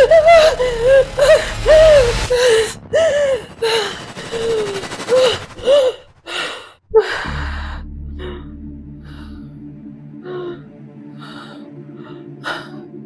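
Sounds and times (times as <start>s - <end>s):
woman sobbing: 0.0s - 2.2s.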